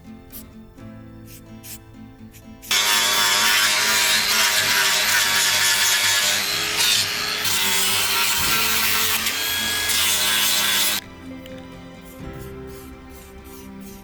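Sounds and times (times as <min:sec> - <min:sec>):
power sander on wood: 0:02.7 - 0:11.0.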